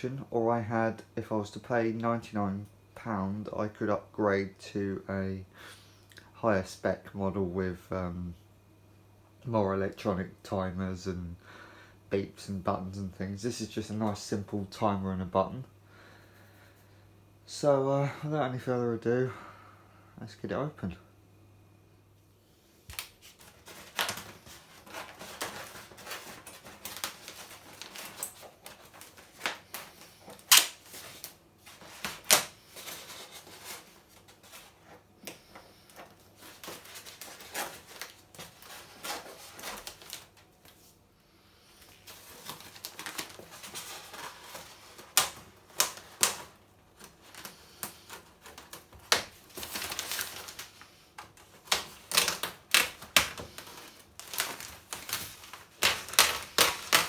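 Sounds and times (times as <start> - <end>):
packaging rustling: 22.9 - 41.0, 41.6 - 57.0.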